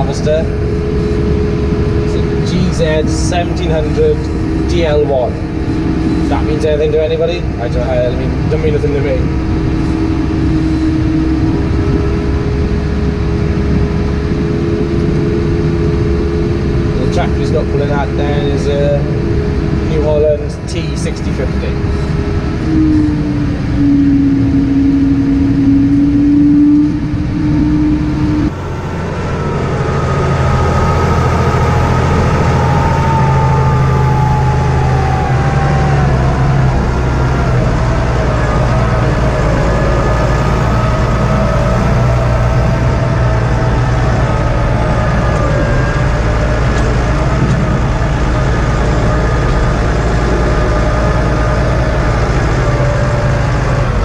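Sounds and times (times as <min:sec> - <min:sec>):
engine whine: 0:00.0 - 0:54.0
tractor engine running: 0:00.0 - 0:54.0.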